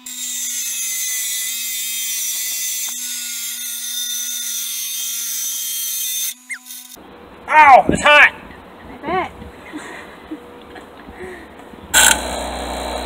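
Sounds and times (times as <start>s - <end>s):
bench grinder motor hum: 11.9s - 13.0s
bolt grinding on wheel: 12.0s - 13.0s.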